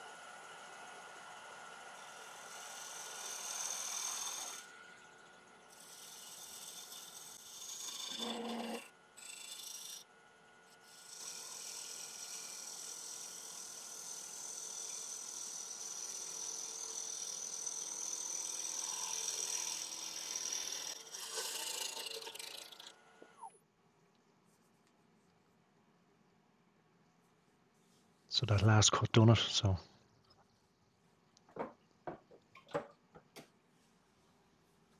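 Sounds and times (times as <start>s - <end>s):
wood lathe gouge cutting: 0.0s - 10.0s, 10.8s - 23.4s.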